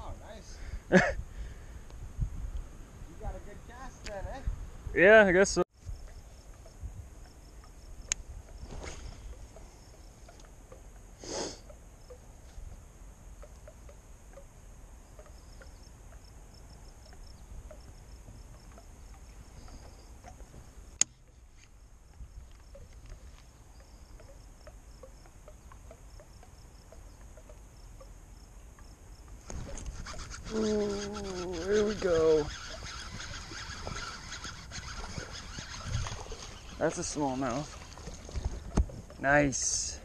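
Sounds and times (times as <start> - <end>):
insects chirping: 5.3 - 40.0.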